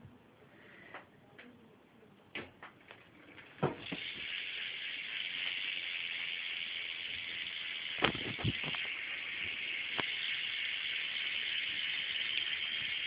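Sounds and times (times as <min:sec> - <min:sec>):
bike hub ticking: 0:03.9 - 0:13.0.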